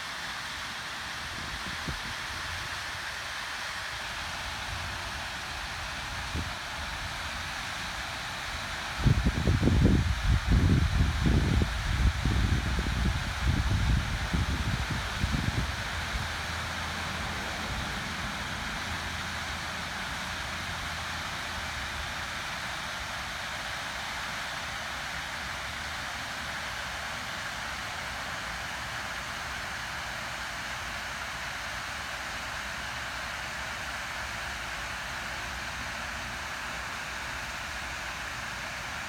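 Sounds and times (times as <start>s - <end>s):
waterfall rushing: 15.8s - 29.1s.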